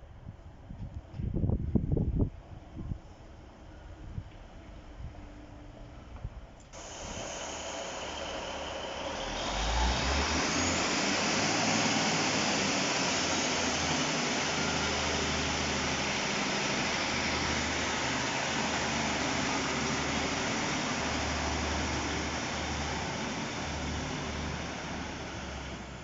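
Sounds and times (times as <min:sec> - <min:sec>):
low engine hum: 0:04.1 - 0:26.0
train rushing noise: 0:06.8 - 0:26.0.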